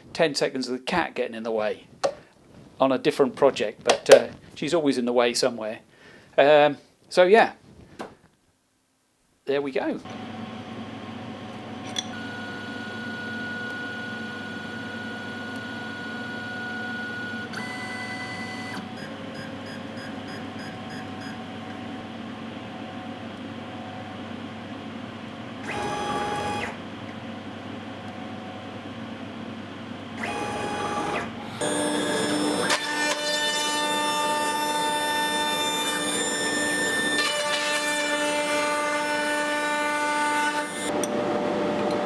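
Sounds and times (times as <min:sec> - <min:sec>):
laser cutter humming: 0:25.6 - 0:26.8
machine whirring: 0:25.6 - 0:26.8, 0:30.2 - 0:42.0.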